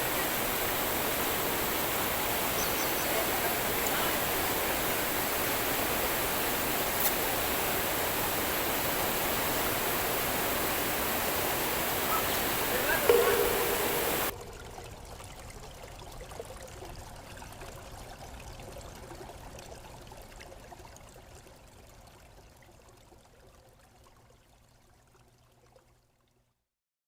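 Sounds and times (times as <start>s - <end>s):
river water flowing: 0.0s - 14.3s.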